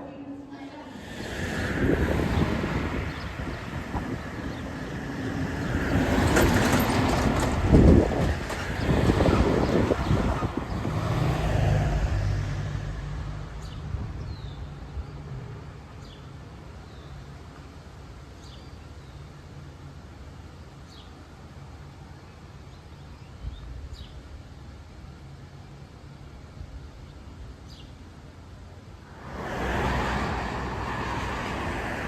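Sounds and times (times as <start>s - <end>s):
low outdoor background: 0.0s - 32.0s
car passing by: 0.9s - 14.6s, 29.0s - 32.0s.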